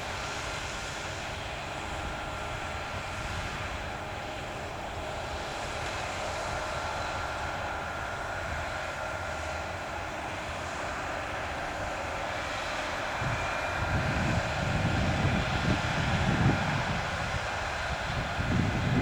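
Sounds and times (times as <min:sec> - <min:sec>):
heavy farm machinery running: 0:00.0 - 0:19.0
wind buffeting microphone: 0:13.0 - 0:19.0.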